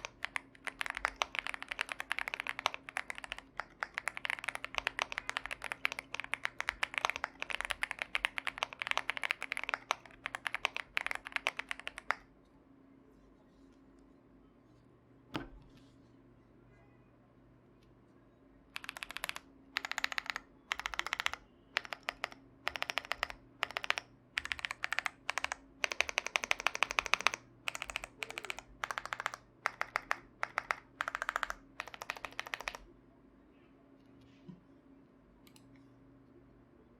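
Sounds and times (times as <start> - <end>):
fast typing on mechanical keyboard: 0.0 - 12.2, 18.8 - 32.9.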